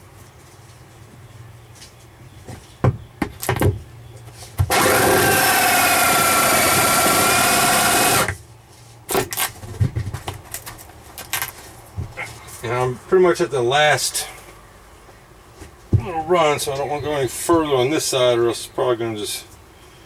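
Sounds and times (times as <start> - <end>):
cordless drill whining: 4.6 - 8.4.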